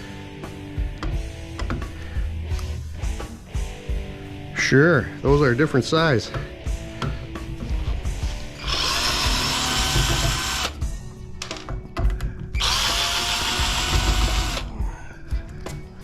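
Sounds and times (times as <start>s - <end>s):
power drill spinning: 8.6s - 10.8s, 12.6s - 14.7s.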